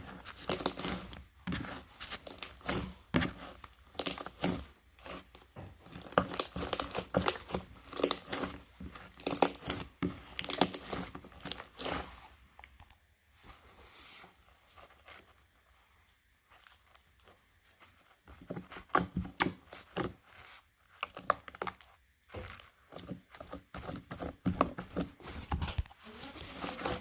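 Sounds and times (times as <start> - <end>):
slime crackling and popping: 0.1 - 12.8.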